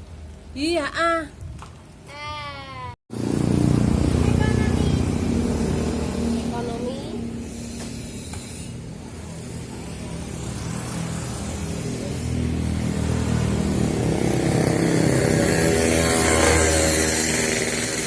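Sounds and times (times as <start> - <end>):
engine running: 3.1 - 18.0.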